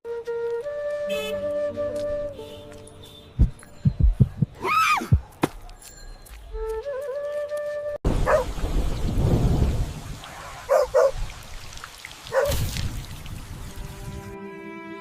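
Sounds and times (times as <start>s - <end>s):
music: 0.0s - 4.6s, 6.2s - 8.0s, 13.7s - 15.0s
thunder rumbling: 8.1s - 11.3s
heavy rain: 8.1s - 14.3s.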